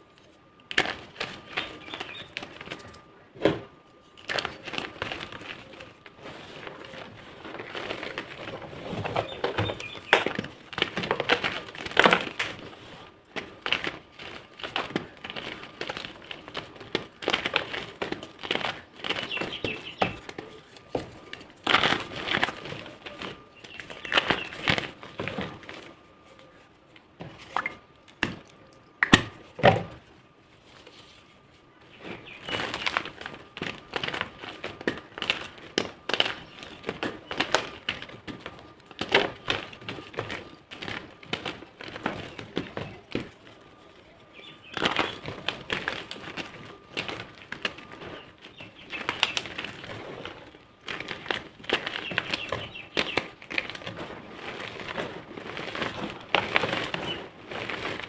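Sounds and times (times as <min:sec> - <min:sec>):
chalk crunching and crackling: 0:00.1 - 0:03.1, 0:03.8 - 0:28.4, 0:30.4 - 0:58.0.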